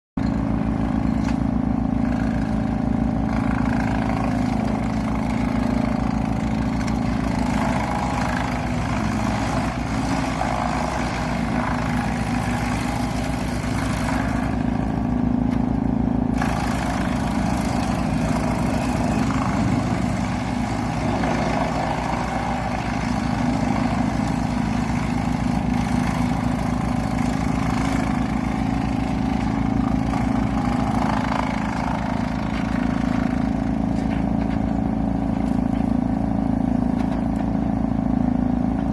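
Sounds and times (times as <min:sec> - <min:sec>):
diesel machinery running: 0:00.2 - 0:38.9
wood churning into sawdust: 0:00.3 - 0:38.9.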